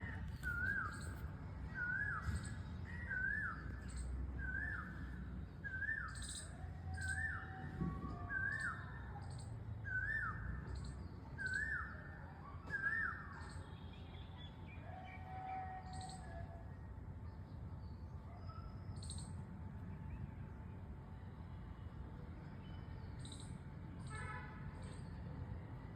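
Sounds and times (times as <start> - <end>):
songbird whistled call: 0.3 - 14.1
faint bird chirps: 0.3 - 16.4.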